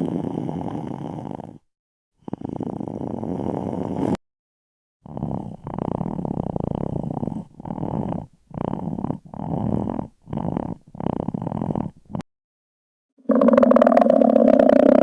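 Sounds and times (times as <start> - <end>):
stomach growling: 13.2 - 15.0.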